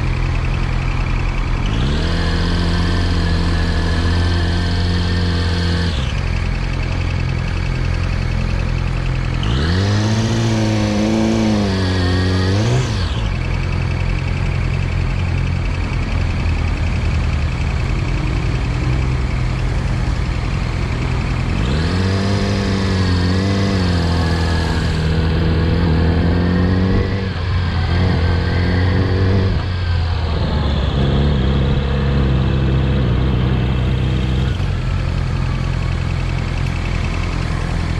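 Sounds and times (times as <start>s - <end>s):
motorcycle engine idling and revving: 0.0s - 37.9s.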